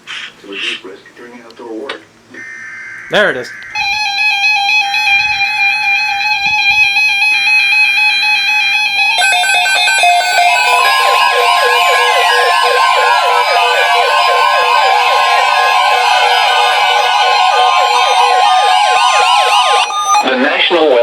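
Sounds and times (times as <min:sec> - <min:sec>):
long steady alert tone: 0:02.4 - 0:20.3
steady electronic beep: 0:02.4 - 0:20.3
warbling siren-like alarm tones: 0:02.4 - 0:20.3
buzzing alert header bursts: 0:09.2 - 0:20.2.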